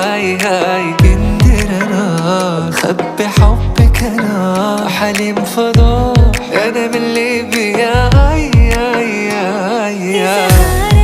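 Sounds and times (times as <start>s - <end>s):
deep booming drum hits: 1.0s - 1.7s, 5.8s - 6.4s.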